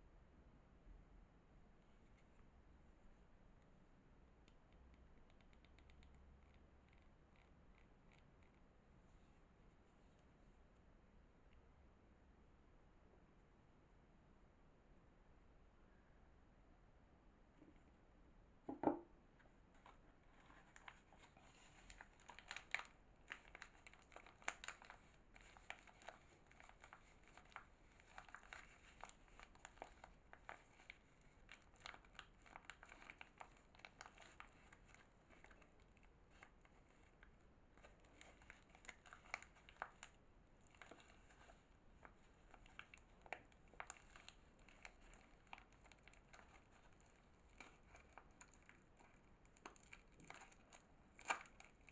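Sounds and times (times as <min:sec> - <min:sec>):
soap wrapping crinkling and tearing: 0:19.6 - 0:51.9.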